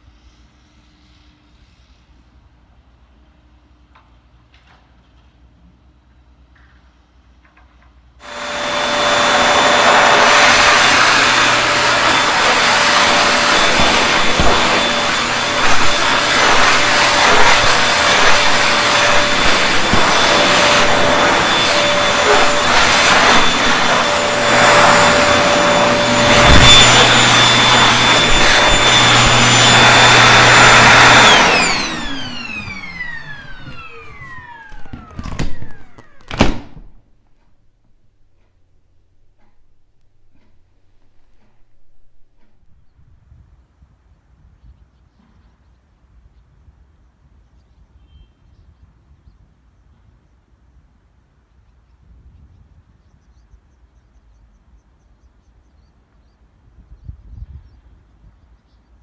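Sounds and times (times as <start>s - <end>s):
vacuum cleaner running: 8.2s - 42.8s.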